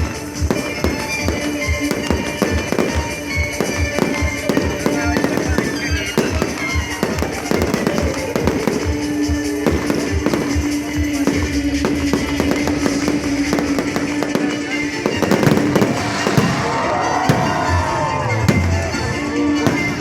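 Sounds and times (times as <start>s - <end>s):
fireworks bursts and crackling bangs: 0.0s - 20.0s
music with a steady beat: 0.0s - 20.0s.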